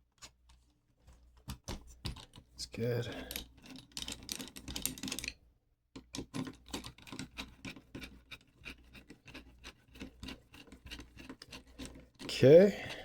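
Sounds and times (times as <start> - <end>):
small metal parts clicking and scraping: 3.1 - 5.4, 6.0 - 13.0.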